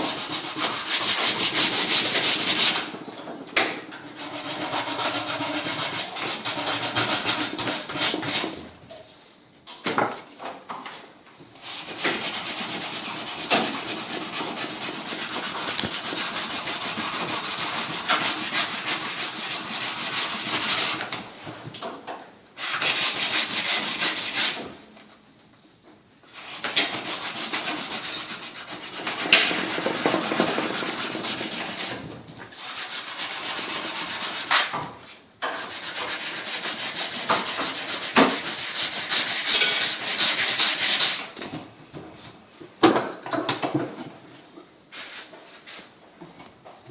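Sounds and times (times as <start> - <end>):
sanding wood: 0.0 - 3.0, 4.2 - 8.5, 11.6 - 21.0, 22.6 - 24.6, 26.4 - 32.0, 32.6 - 34.7, 35.5 - 41.3.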